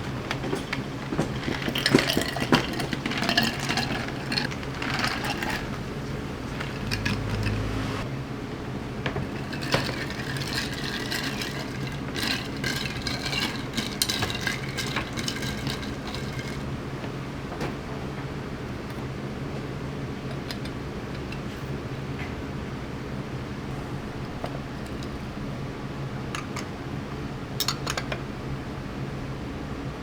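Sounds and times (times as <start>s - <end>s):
low hum of kitchen equipment: 0.0s - 30.0s
dishes and cutlery clinking: 6.5s - 7.9s.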